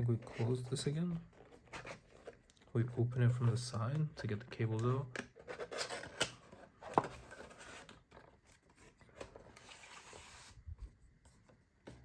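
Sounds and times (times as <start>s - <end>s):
cardboard rubbing and scraping: 6.8s - 10.6s.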